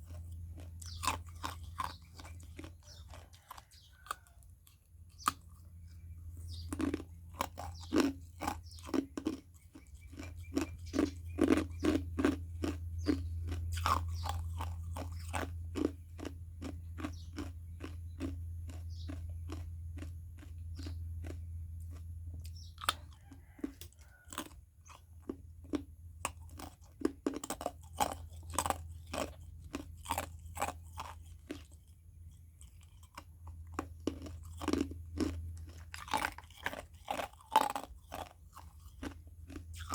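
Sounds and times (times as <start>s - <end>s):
ice cubes crunched by chewing: 0.0s - 5.8s, 6.4s - 39.9s
steady low hum: 0.0s - 23.2s.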